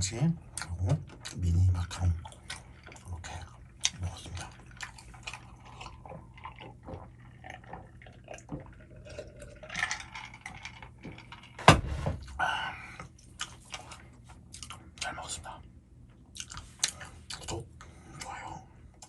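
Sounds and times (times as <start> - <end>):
slurping noodles: 2.2 - 10.4.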